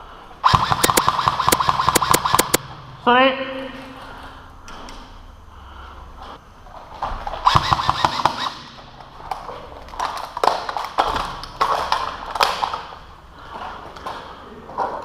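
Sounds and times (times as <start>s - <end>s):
airsoft gun firing bursts: 0.4s - 2.6s, 7.5s - 8.6s.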